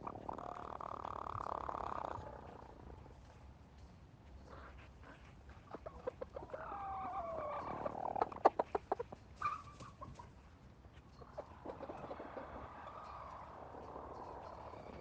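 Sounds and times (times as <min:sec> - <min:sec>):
hen rattling trills and croaks: 0:00.0 - 0:03.0, 0:11.1 - 0:15.0
hens snoring: 0:00.0 - 0:03.1.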